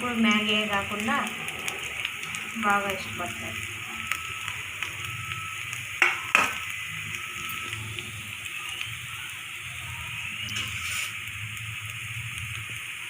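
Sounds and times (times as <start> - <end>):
oil sizzling in a pan: 0.0 - 13.0.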